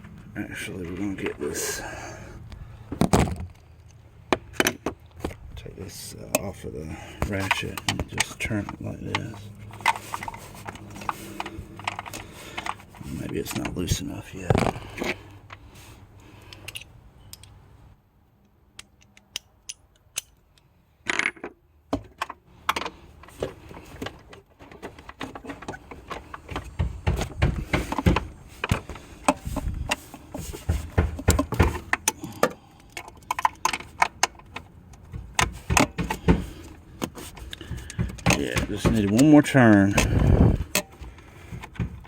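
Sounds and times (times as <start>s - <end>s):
socket wrench clicking on metal: 18.7s - 21.2s.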